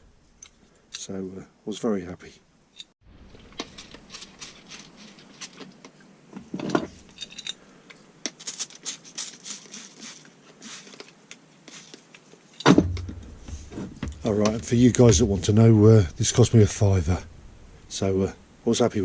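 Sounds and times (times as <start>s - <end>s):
small hard objects clicking and rattling: 3.5s - 5.8s, 7.0s - 7.6s, 8.2s - 13.3s.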